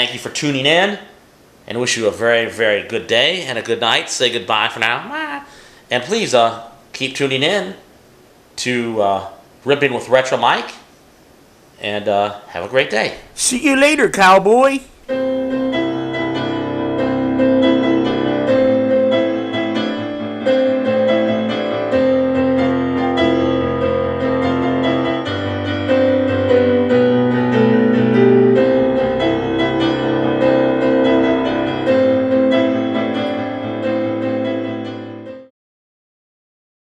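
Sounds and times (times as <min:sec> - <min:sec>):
background piano music: 0:13.4 - 0:35.5.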